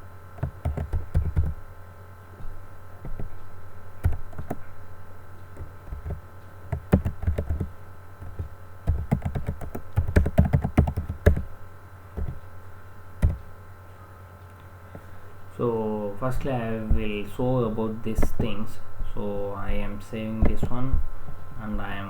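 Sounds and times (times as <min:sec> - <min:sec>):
low electrical hum: 0:00.0 - 0:22.0
computer keyboard typing: 0:00.4 - 0:01.6, 0:03.0 - 0:03.4, 0:04.0 - 0:04.6, 0:05.6 - 0:11.5, 0:12.2 - 0:12.4, 0:13.2 - 0:13.5.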